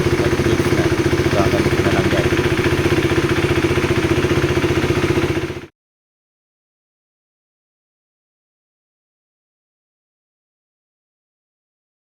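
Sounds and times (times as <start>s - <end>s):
motorcycle engine idling: 0.0s - 5.7s.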